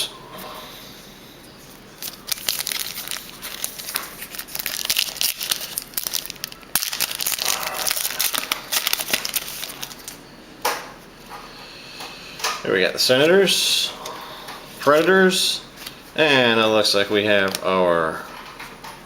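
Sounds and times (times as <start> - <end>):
wrapper crinkling: 1.7 - 10.2, 15.8 - 19.0
wrapper ripping loudly: 2.0 - 10.2.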